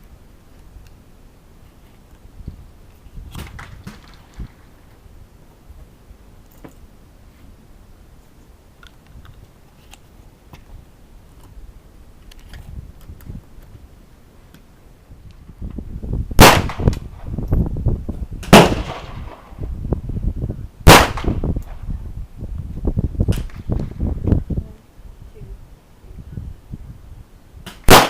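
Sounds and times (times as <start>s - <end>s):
low rumble on microphone: 15.0s - 27.7s
loud handgun shots: 16.4s - 17.0s, 18.4s - 19.4s, 20.9s - 21.4s
faint distant gunshots: 20.9s - 21.4s.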